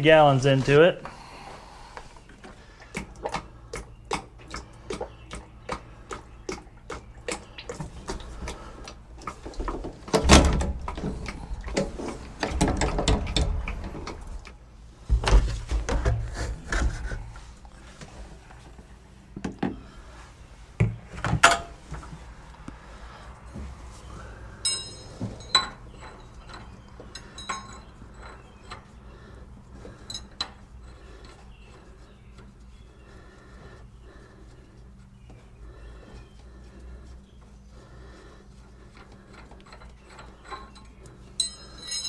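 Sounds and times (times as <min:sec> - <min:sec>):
containers clicking and clunking: 0:02.2 - 0:17.9
low thuds and rumbles: 0:09.6 - 0:16.5.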